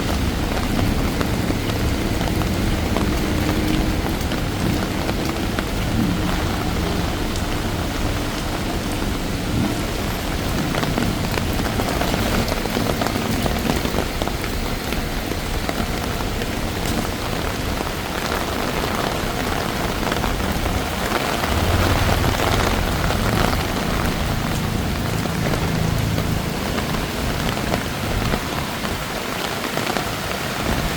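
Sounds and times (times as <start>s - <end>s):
rain spattering on street: 0.0s - 30.9s
low rumble: 20.2s - 28.4s.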